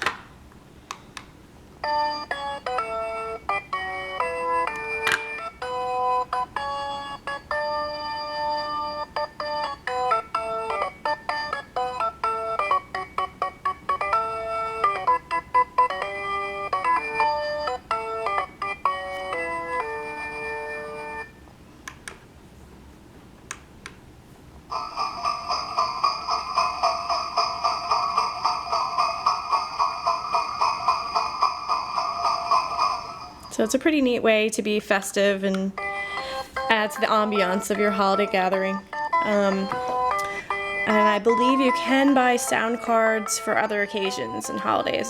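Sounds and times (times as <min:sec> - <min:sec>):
electronic doorbell chime melody: 0:01.8 - 0:21.4, 0:35.8 - 0:45.0.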